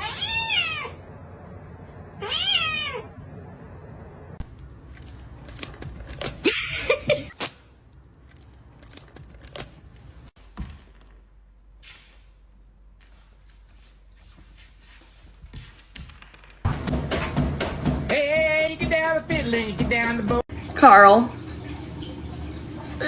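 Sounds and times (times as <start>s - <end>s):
cat meowing: 0.0s - 1.0s, 2.2s - 3.1s
noisy scuffle with clicks and knocks: 4.4s - 6.5s, 12.9s - 17.4s.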